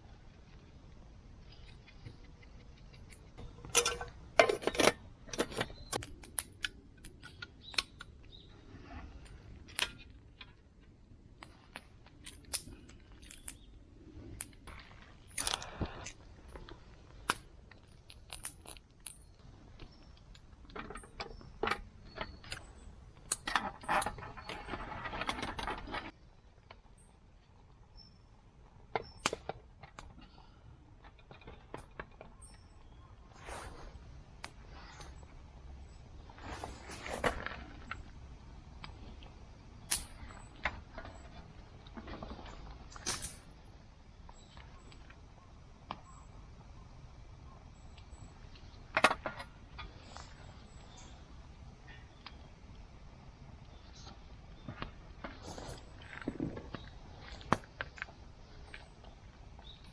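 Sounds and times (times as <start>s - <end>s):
rustling scrape: 33.2s - 35.2s, 36.2s - 38.0s, 55.2s - 57.5s.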